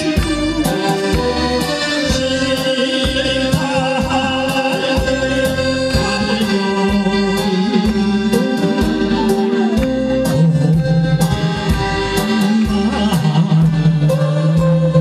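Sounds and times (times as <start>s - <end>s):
band playing steady beat: 0.0s - 15.0s
person singing: 0.0s - 15.0s.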